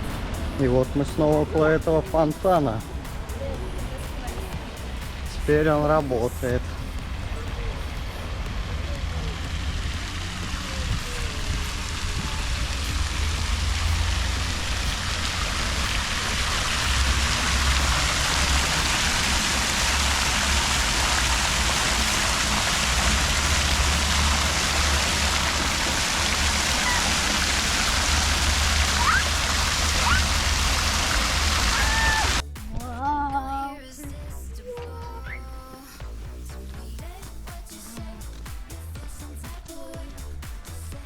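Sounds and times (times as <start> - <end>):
fountain splashing water: 0.0 - 32.4
low rumble: 0.0 - 35.2.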